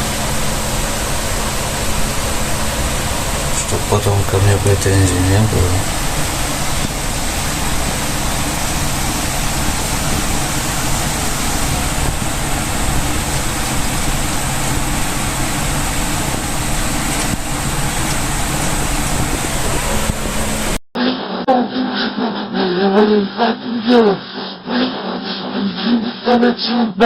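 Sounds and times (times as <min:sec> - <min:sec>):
loud rushing noise: 0:00.0 - 0:21.3.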